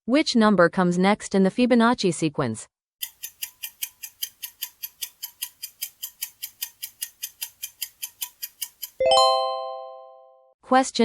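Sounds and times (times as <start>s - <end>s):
clock ticking quickly: 3.0s - 9.0s.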